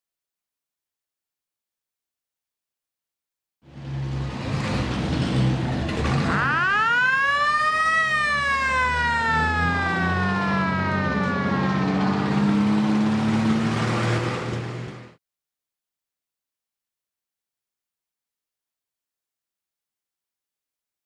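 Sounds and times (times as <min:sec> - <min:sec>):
engine low rumble: 0:03.7 - 0:15.2.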